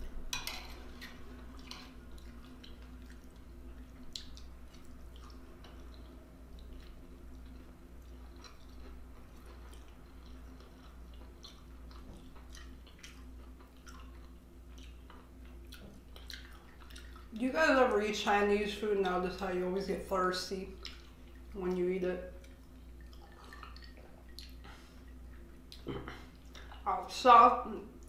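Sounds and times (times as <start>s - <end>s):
faint low hum: 0.0s - 28.0s
person chewing food: 0.8s - 17.3s, 20.8s - 21.5s, 22.4s - 26.8s.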